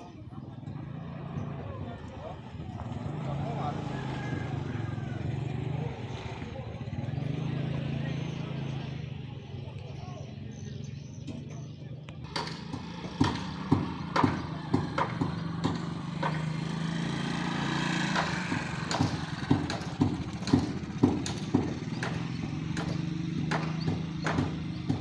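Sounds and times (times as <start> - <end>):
sharp knocks: 12.3 - 16.8, 18.0 - 25.0.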